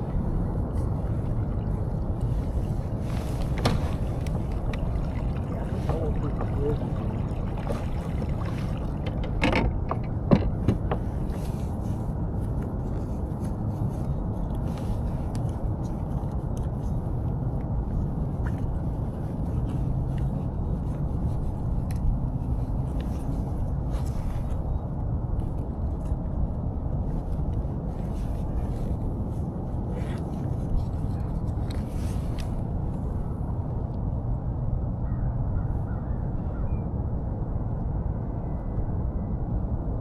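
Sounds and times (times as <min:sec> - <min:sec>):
hull rumbling through water: 0:00.0 - 0:34.5.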